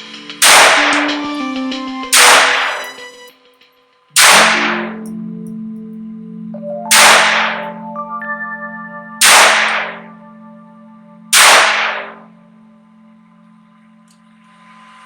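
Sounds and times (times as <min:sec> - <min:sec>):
background music: 0:00.0 - 0:15.0
pistol shots with echo: 0:00.4 - 0:01.0, 0:04.2 - 0:05.0, 0:06.9 - 0:07.7, 0:09.2 - 0:10.0, 0:11.4 - 0:12.2.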